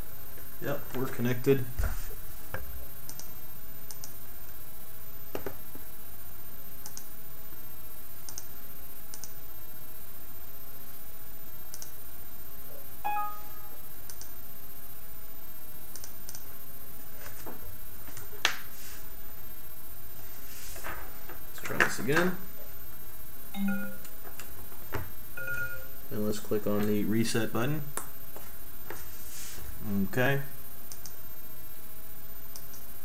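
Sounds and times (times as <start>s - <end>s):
steady background hiss: 0.0s - 33.0s
faint scattered clicks: 3.1s - 3.3s, 3.9s - 4.2s, 6.8s - 7.1s, 8.3s - 8.5s, 9.1s - 9.4s, 11.7s - 12.0s, 14.1s - 14.3s, 15.9s - 16.5s, 30.9s - 31.2s
brief electronic tone: 13.0s - 13.8s, 23.6s - 24.1s, 25.4s - 26.0s.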